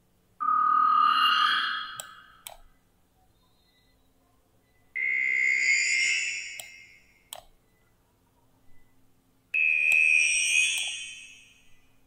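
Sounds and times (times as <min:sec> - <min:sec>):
high pitch-shifted music loop: 0:09.6 - 0:11.7.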